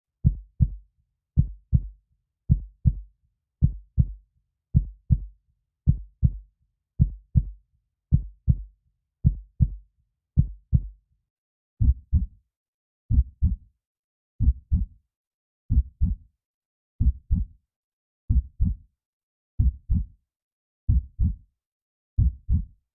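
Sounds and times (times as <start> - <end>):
heartbeat thumps: 11.9 - 12.3, 13.1 - 13.6, 14.4 - 14.9, 15.7 - 16.2, 19.6 - 20.1, 20.9 - 21.4, 22.2 - 22.7.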